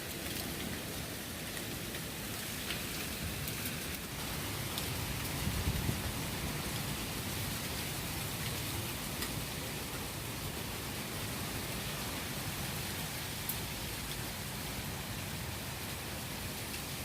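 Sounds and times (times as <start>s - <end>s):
steady rain: 0.0s - 17.0s
gusty wind rumbling: 4.3s - 7.0s.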